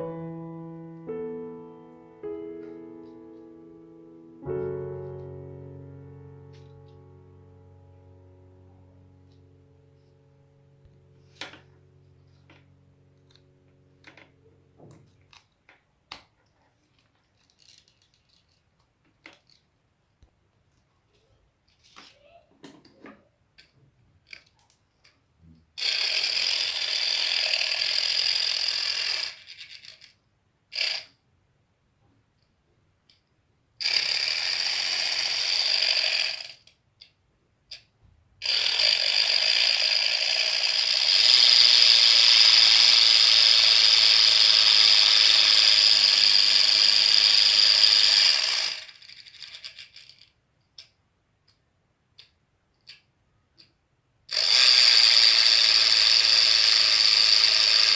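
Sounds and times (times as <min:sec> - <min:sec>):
motor-driven gears whirring: 0:38.4 - 0:49.7, 0:54.3 - 0:57.9.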